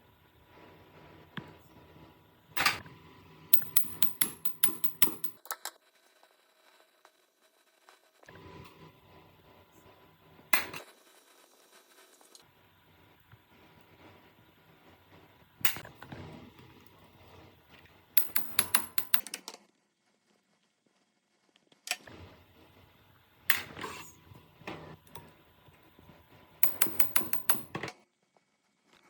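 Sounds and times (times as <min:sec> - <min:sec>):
tools knocking on metal: 0:03.6 - 0:05.4, 0:18.2 - 0:19.3, 0:26.6 - 0:27.8.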